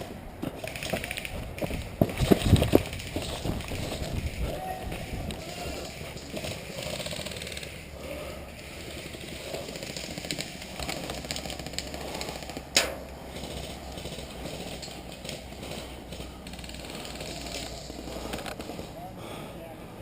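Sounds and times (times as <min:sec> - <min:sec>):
footsteps: 0:00.0 - 0:06.6
sharp crack: 0:09.1 - 0:14.3.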